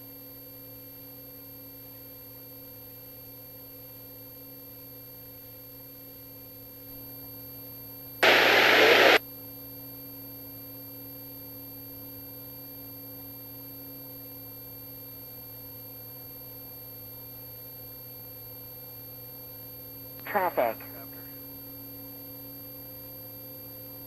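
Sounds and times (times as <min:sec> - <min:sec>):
faint steady hum: 0:08.2 - 0:09.2, 0:20.2 - 0:21.4
loud burst of radio static: 0:08.2 - 0:09.2, 0:20.3 - 0:21.3
radio receiver hiss: 0:08.2 - 0:09.2, 0:20.3 - 0:21.2.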